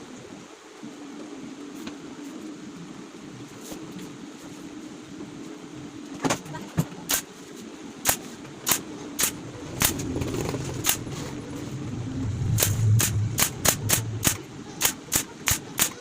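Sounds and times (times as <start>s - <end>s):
steady low hum: 8.7s - 16.0s
low rumble: 9.4s - 15.2s.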